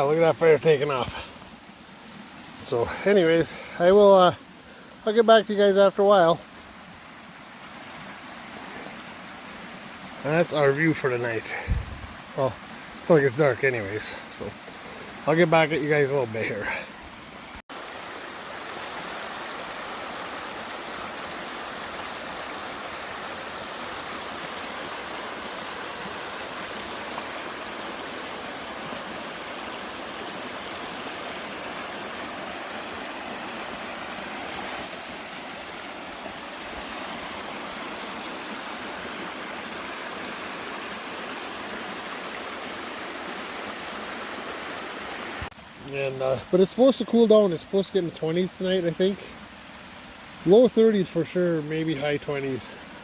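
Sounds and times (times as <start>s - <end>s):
brief loud hiss: 34.4s - 35.6s.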